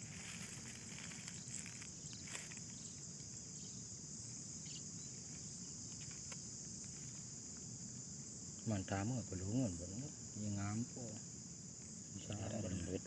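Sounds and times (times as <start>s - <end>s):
faint rustles: 0.0s - 3.4s
insects chirring: 0.0s - 13.0s.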